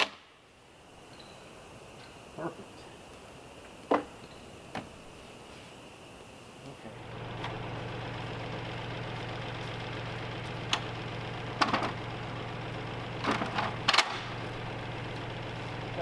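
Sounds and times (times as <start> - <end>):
tractor engine idling: 6.8 - 16.0.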